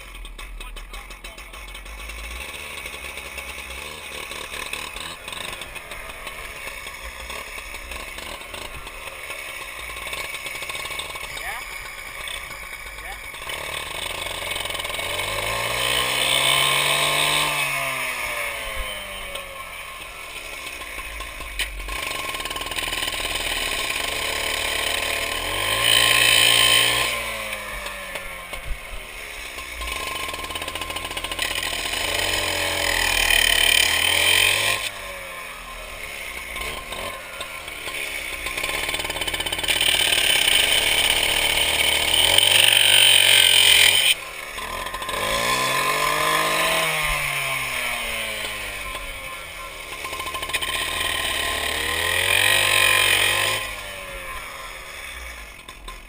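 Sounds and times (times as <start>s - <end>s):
cut-off saw revving: 0.0s - 56.0s.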